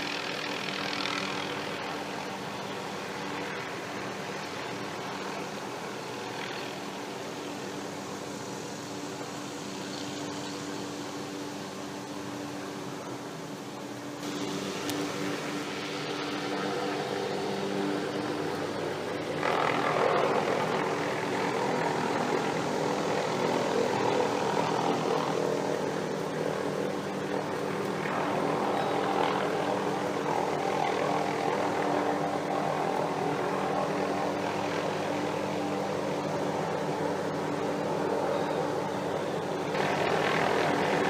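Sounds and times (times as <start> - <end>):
rushing noise: 0.0 - 30.8
helicopter engine and rotor: 0.0 - 41.0.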